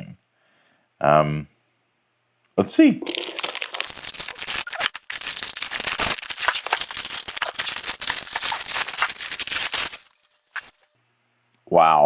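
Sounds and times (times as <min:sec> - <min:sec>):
packaging crinkling: 0:03.0 - 0:10.9.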